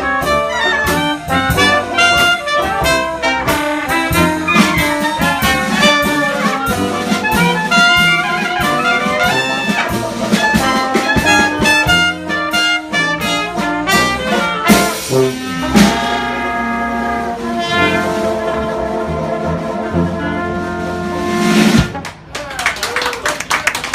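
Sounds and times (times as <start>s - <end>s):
brass band playing jazz: 0.0s - 22.3s.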